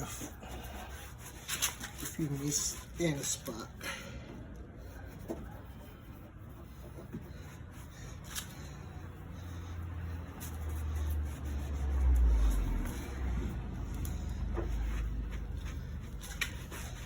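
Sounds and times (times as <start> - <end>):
motor vehicle engine rumble: 7.3 - 17.0.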